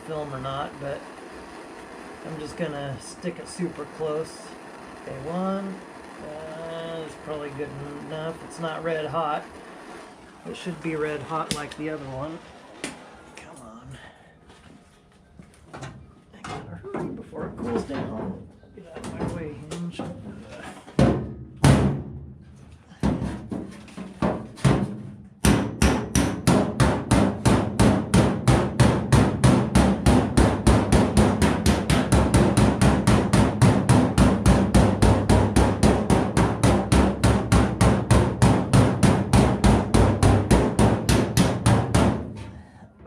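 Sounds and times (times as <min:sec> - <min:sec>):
hammer striking steel panel: 0:21.0 - 0:22.2, 0:23.0 - 0:42.4.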